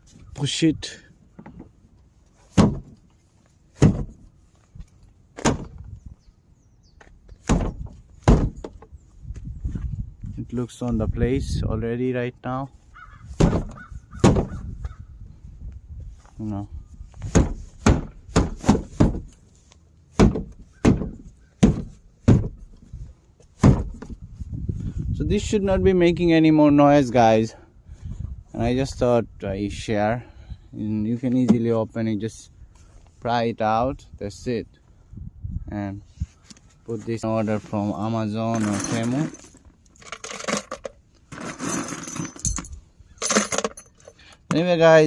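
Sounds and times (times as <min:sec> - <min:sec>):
panel pushed home thumps: 0:02.5 - 0:03.0, 0:03.8 - 0:04.2, 0:05.4 - 0:05.8, 0:07.4 - 0:08.8, 0:13.4 - 0:14.7, 0:17.2 - 0:19.3, 0:20.2 - 0:22.6, 0:23.6 - 0:24.1.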